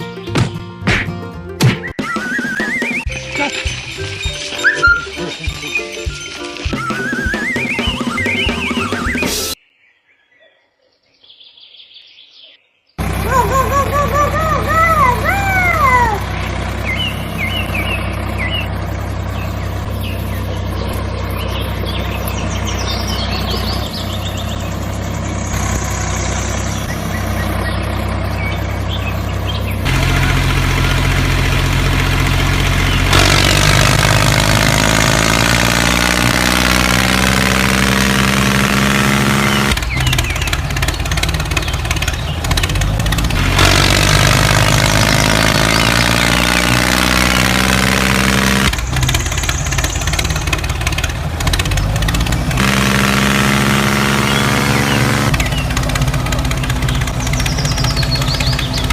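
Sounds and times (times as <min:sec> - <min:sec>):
brief high chirps: 0:02.0 - 0:09.6
vehicle engine running: 0:02.2 - 0:09.5, 0:13.0 - 0:58.9.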